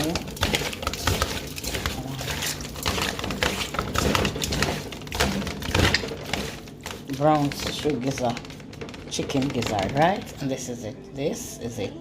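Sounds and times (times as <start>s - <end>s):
hands squishing raw meat: 0.0s - 8.9s.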